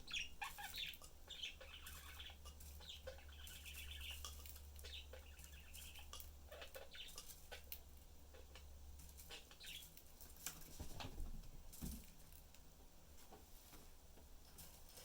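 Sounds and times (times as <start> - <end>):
budgerigars chirping: 0.0 - 9.9.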